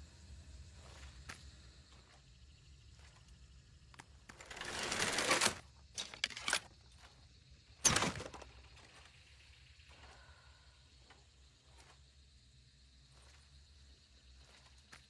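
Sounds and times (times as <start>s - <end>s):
rapid mechanical clicking: 4.2s - 6.7s.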